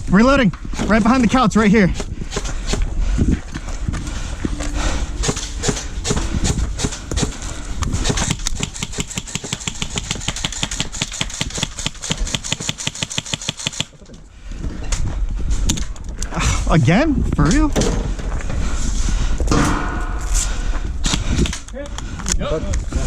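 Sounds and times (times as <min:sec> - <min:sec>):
airsoft guns firing: 0:08.0 - 0:13.9.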